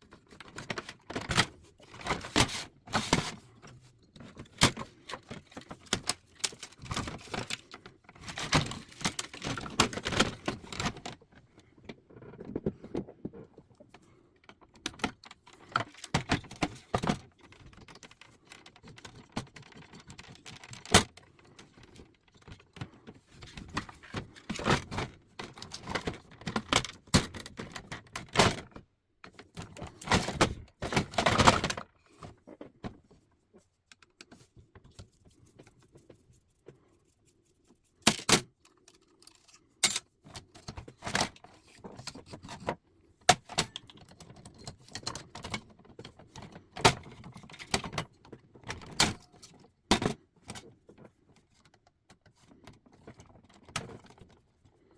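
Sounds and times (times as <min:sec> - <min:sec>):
typewriter parts clicking and rattling: 0:14.7 - 0:31.8, 0:38.0 - 0:42.7, 0:43.3 - 0:50.7.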